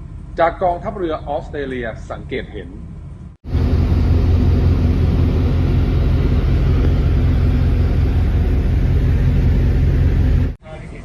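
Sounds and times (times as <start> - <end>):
boat engines droning: 3.5 - 10.6.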